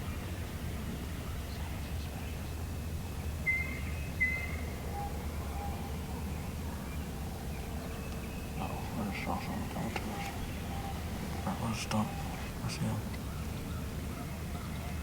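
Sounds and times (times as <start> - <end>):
whistled bird notes: 3.4 - 5.9.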